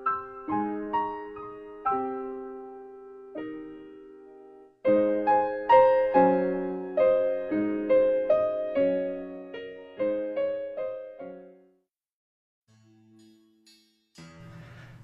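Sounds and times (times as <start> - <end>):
solo piano music: 0.0 - 11.8.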